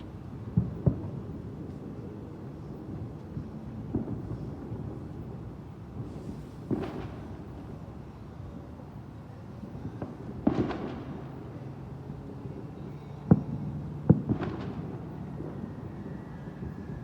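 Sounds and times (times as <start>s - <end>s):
fireworks bangs and cracks: 0.5s - 2.0s, 2.8s - 7.8s, 9.8s - 11.6s, 13.3s - 15.7s.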